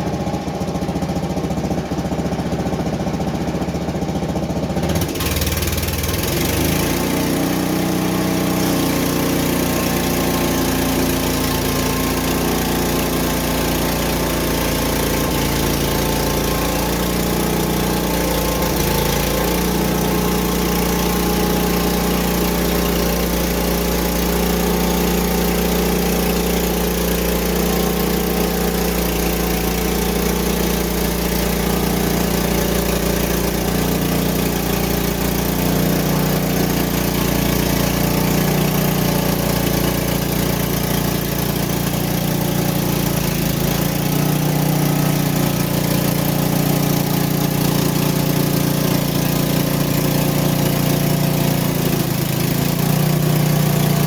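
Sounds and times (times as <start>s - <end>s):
sawmill engine running: 0.0s - 54.0s.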